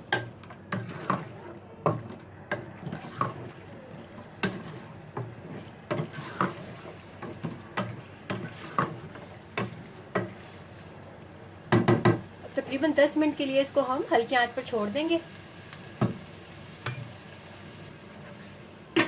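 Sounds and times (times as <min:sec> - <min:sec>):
spoon scraping a cooking pot: 0:00.7 - 0:02.2, 0:04.4 - 0:10.6.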